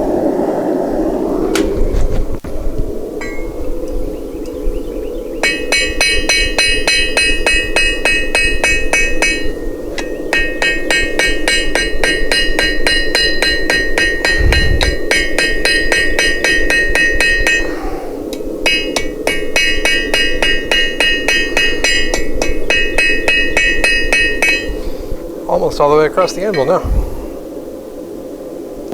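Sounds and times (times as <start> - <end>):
steady rushing noise: 0.0 - 28.9
hammer ringing on steel anvil: 5.4 - 17.7, 18.7 - 24.8.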